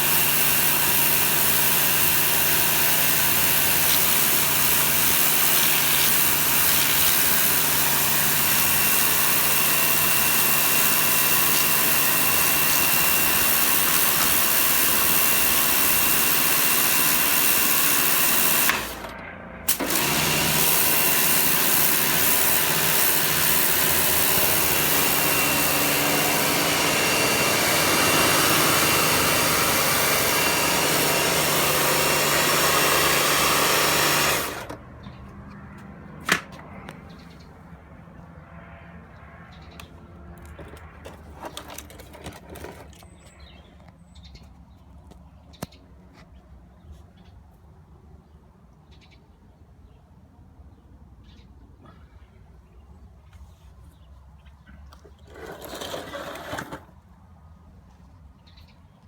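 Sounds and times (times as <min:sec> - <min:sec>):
pressure washer spraying: 0:00.0 - 0:19.1, 0:19.7 - 0:34.8.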